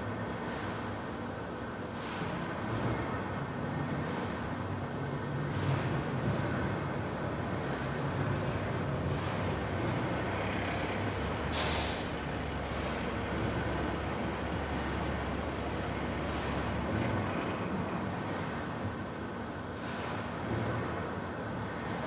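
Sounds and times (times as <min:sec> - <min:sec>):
air hissing: 0:11.5 - 0:12.2.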